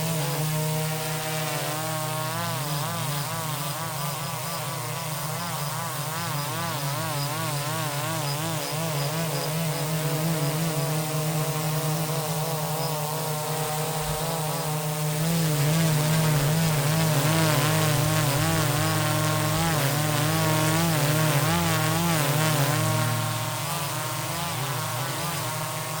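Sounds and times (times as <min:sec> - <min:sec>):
drone propellers humming: 0:09.9 - 0:26.0.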